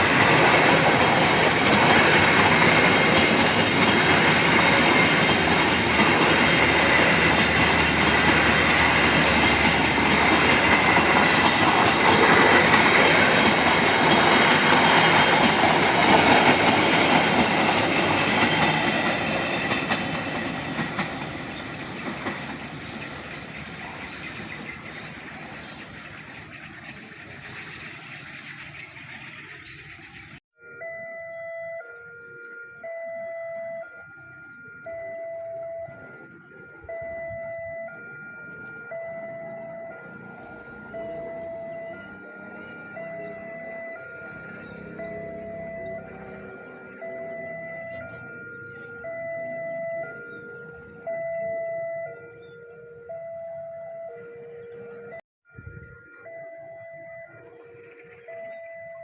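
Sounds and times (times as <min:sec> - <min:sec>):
train rolling past: 0:00.0 - 0:30.4, 0:34.0 - 0:55.2.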